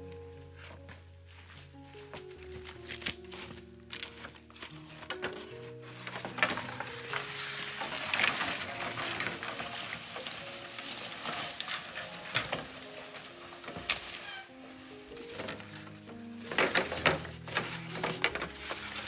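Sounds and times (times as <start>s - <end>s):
soft background music: 0.0s - 19.0s.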